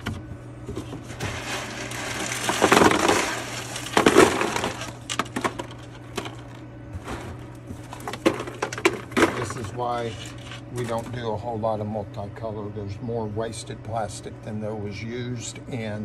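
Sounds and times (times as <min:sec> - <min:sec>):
plastic pieces rattling: 0:00.8 - 0:06.6.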